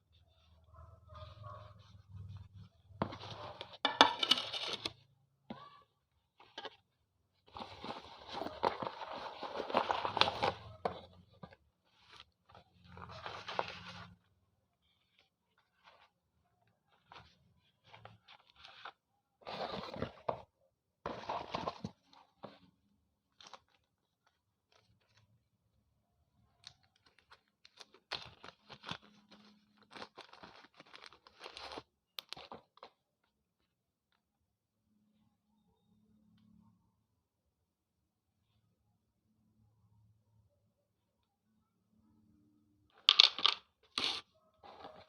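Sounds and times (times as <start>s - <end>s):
packaging rustling and tearing: 7.5s - 10.8s, 26.8s - 32.6s
small crackles and clicks: 26.6s - 32.9s
slate pencil crunching: 43.9s - 44.9s.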